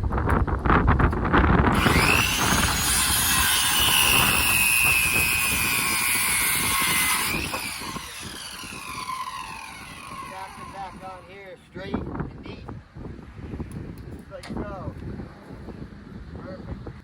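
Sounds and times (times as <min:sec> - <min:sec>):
power saw cutting wood: 0:01.7 - 0:11.5.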